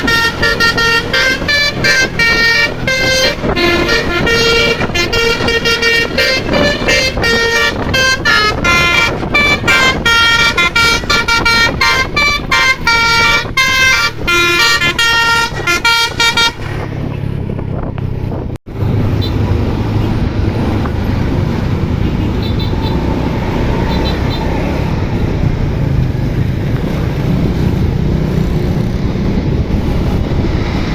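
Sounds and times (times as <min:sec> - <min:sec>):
multi-tone bus horn melody: 0:00.0 - 0:17.1, 0:22.0 - 0:25.0.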